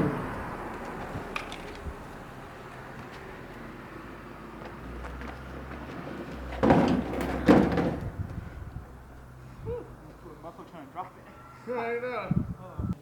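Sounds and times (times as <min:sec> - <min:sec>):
steel truck bed dragged on frame: 0:00.0 - 0:01.5, 0:03.1 - 0:09.5.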